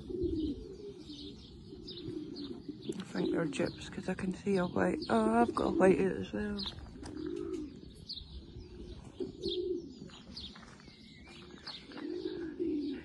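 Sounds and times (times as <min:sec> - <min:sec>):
pigeons cooing: 0:00.0 - 0:13.0
small bird chirping: 0:06.6 - 0:12.4.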